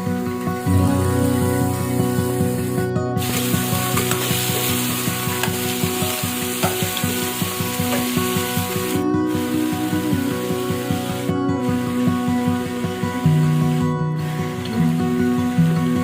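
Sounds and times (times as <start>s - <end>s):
food sizzling in hot oil: 0.6s - 12.0s.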